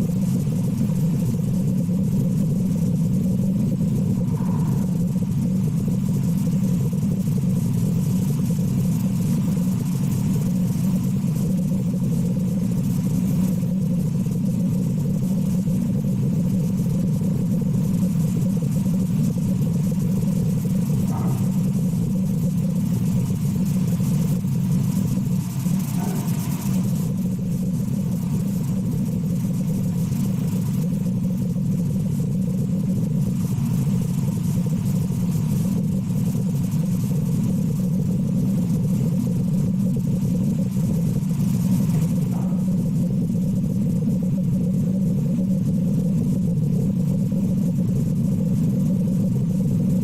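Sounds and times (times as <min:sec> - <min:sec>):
steady low engine rumble: 0:00.0 - 0:50.0.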